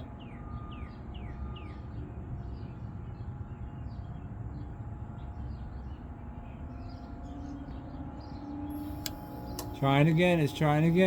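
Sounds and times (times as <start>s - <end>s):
small birds chirping: 5.4s - 11.0s.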